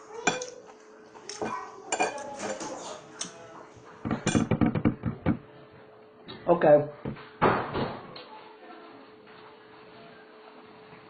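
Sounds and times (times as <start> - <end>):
cutlery clinking on a plate: 0.2 - 0.6, 1.3 - 3.3, 4.1 - 5.3.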